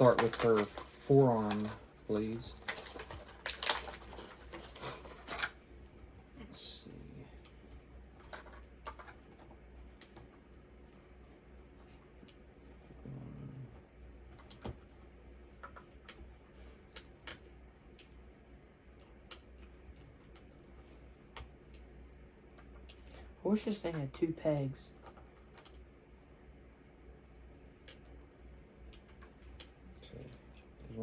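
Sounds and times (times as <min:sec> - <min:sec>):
low steady hum: 0:00.0 - 0:31.0.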